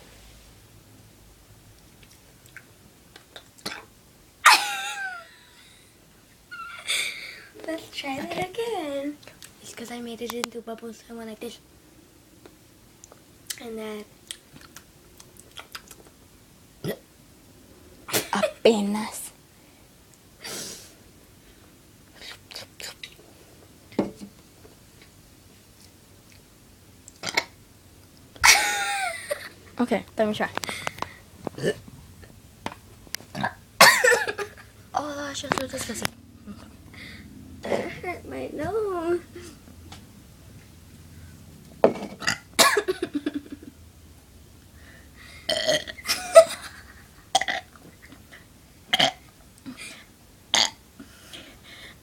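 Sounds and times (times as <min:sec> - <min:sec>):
person burping: 0:27.2 - 0:27.6, 0:31.6 - 0:31.8, 0:33.3 - 0:34.4, 0:42.2 - 0:43.0, 0:45.5 - 0:46.1, 0:47.3 - 0:47.8, 0:48.9 - 0:49.3, 0:50.5 - 0:50.8
throaty sound: 0:27.2 - 0:27.6, 0:31.5 - 0:31.9.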